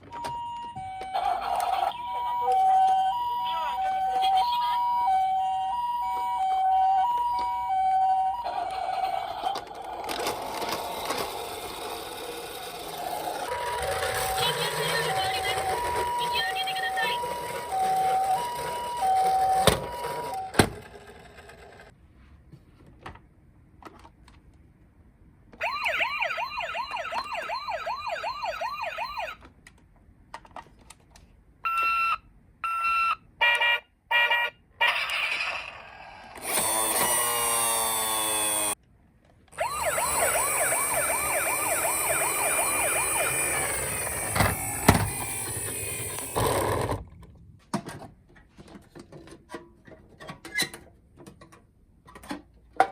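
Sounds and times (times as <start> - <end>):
toy electronic sirens: 0.1 - 20.9, 25.6 - 29.4, 31.7 - 38.8, 39.6 - 46.6.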